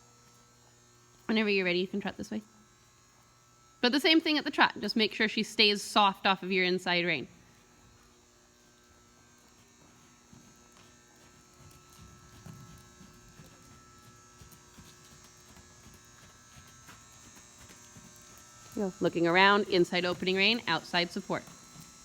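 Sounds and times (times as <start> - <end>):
faint electrical hum and buzz: 0.0 - 22.0.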